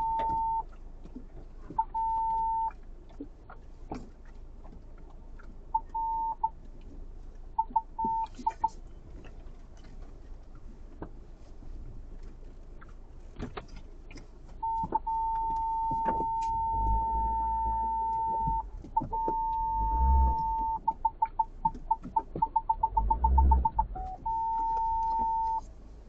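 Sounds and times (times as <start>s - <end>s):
electronic beeper: 14.6s - 21.4s, 22.3s - 25.6s.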